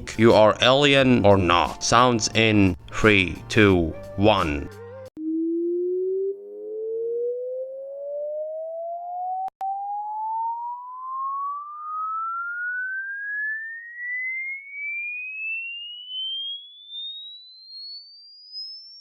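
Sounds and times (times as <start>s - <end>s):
rising test tone sweep: 5.2s - 19.0s.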